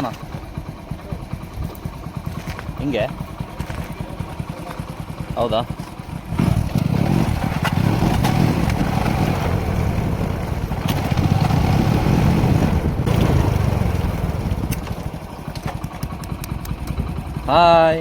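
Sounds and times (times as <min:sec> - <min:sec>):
motorcycle engine running: 0:00.0 - 0:18.0
sharp clicks: 0:14.6 - 0:17.1.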